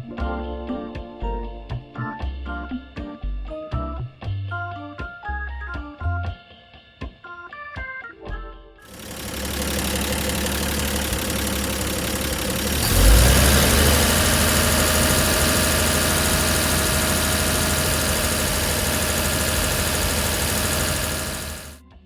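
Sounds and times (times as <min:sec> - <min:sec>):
machine running: 0:08.9 - 0:21.8
deep hum: 0:09.4 - 0:21.8.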